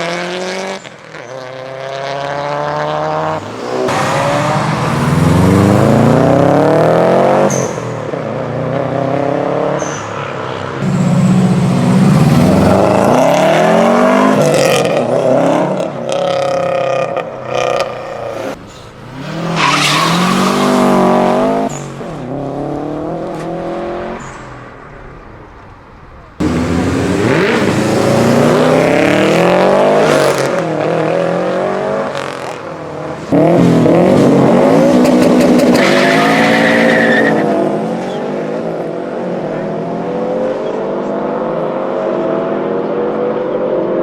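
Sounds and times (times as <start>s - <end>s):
car engine accelerating hard: 26.4s - 32.6s.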